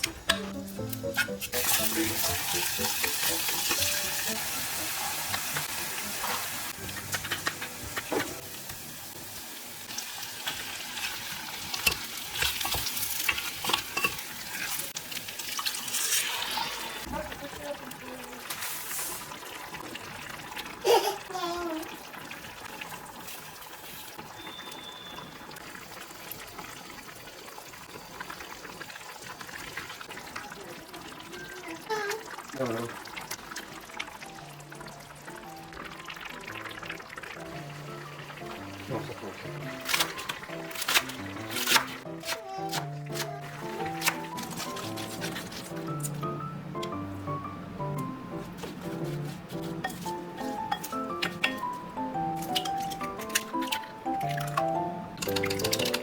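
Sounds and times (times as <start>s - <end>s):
food sizzling in a frying pan: 0.6s - 44.4s.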